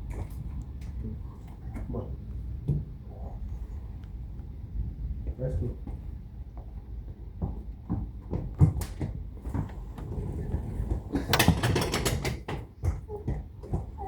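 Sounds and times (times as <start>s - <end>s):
rattling clicks: 11.3s - 12.5s
mechanical clicks and knocks: 11.3s - 12.6s.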